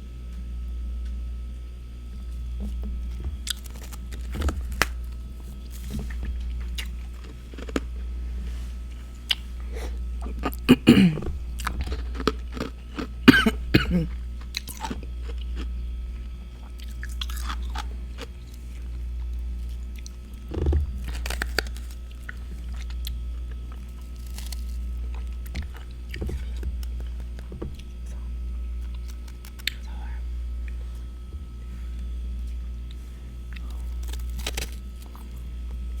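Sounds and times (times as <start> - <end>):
steady low hum: 0.0 - 36.0
crunching and chewing frost: 0.5 - 36.0.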